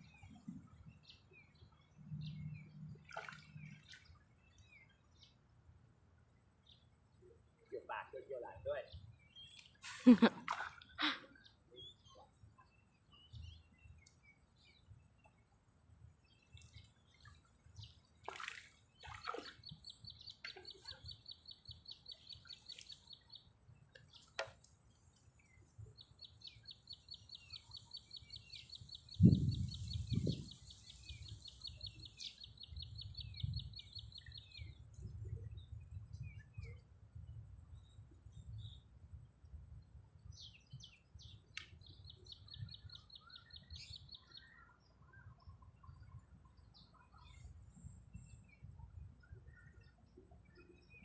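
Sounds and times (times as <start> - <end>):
bird chirps: 16.3 - 24.6, 25.4 - 36.8, 40.3 - 51.0.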